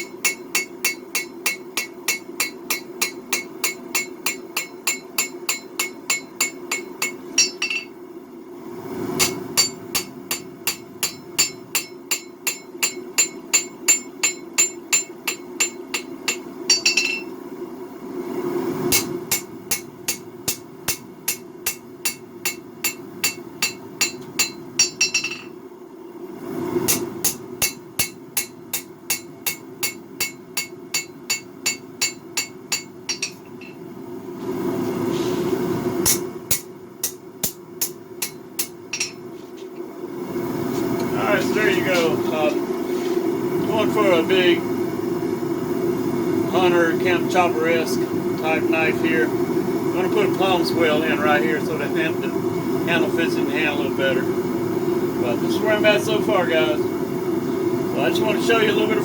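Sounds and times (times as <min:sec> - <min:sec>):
hammer ringing on anvil: 0:00.0 - 0:08.0, 0:09.2 - 0:17.3, 0:18.9 - 0:25.6, 0:26.9 - 0:33.8, 0:36.1 - 0:39.3
low roar of gas forge: 0:00.0 - 0:59.0.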